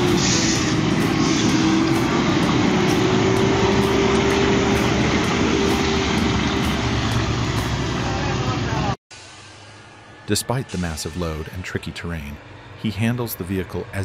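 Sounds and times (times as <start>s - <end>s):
truck engine running under load: 0.0s - 9.0s
rising whine: 0.0s - 14.0s.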